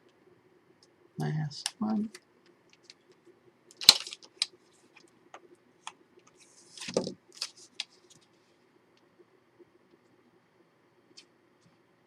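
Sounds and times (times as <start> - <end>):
paper and chipboard handled: 6.3 - 8.2.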